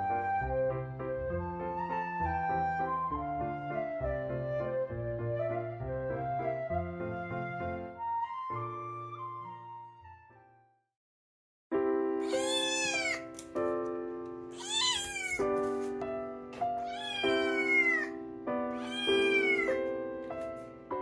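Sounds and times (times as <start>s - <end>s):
cat meowing: 12.2s - 13.4s, 14.6s - 15.6s, 16.8s - 19.8s.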